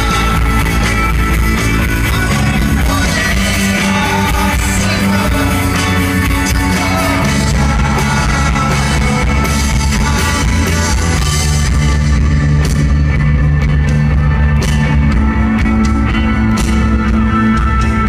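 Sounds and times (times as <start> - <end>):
bass guitar: 0.0 - 18.0
drum kit: 0.0 - 18.0
electric guitars: 0.0 - 18.0.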